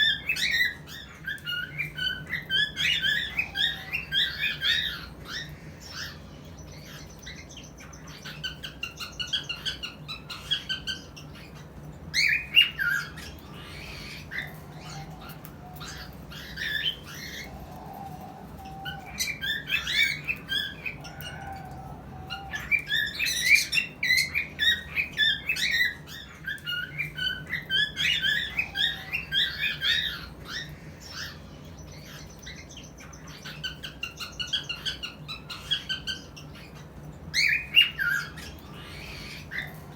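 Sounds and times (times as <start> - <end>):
cockatiels chirping and whistling: 0.0 - 39.9.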